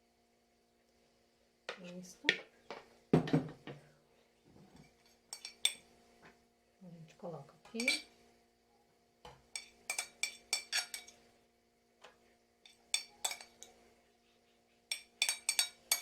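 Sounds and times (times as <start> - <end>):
faint steady hum: 0.0 - 16.0
metal spoon clinking on tins: 4.7 - 5.8, 7.7 - 8.1, 9.3 - 11.2, 12.6 - 13.8, 14.9 - 16.0.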